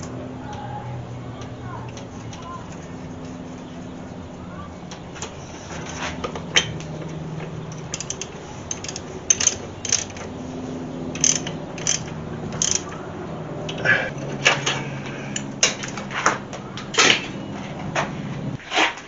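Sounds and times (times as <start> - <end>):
low steady hum: 0.0 - 18.6
mechanical ratchet clicking: 7.7 - 10.4, 11.1 - 13.0.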